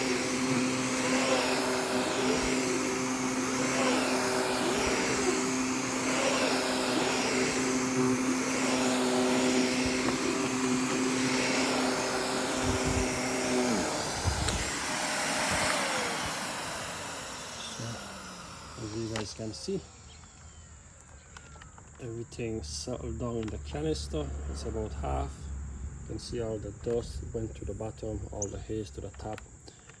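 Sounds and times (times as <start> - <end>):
vacuum cleaner running: 0.0 - 20.5
vacuum motor winding down: 0.0 - 22.0.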